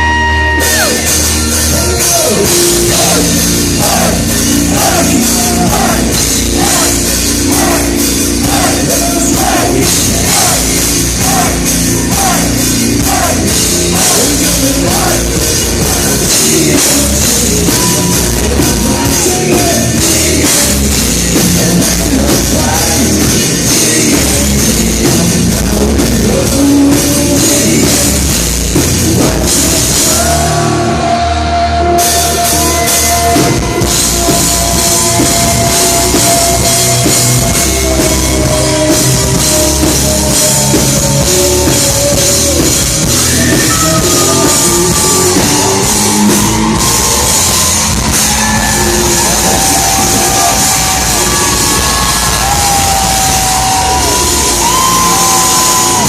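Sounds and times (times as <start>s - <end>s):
distorted guitars: 0.0s - 56.0s
live hard rock band: 0.0s - 56.0s
person singing: 0.0s - 56.0s
pounding drum kit: 0.0s - 56.0s.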